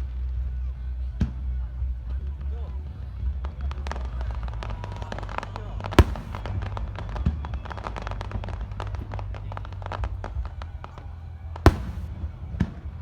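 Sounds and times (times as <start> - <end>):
firework boom: 6.0 - 6.6, 11.7 - 12.3
fireworks crackling: 6.0 - 6.6, 11.7 - 12.2.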